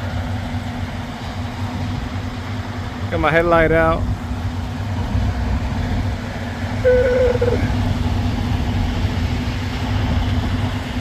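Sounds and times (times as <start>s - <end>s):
diesel truck engine idling: 0.0s - 11.0s
short wavering tone: 6.8s - 7.7s.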